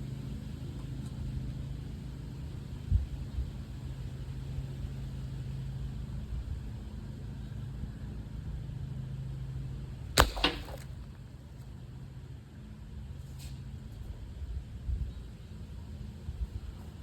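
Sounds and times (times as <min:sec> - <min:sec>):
air rifle shot crack: 0:10.2 - 0:11.1.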